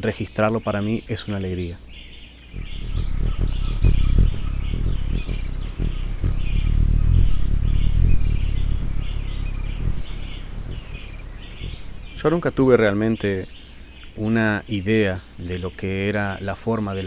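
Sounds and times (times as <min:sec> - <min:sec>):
birds chattering: 0:00.0 - 0:17.0
low rumble: 0:02.5 - 0:13.8
bird repeating high ringing call: 0:07.9 - 0:12.5.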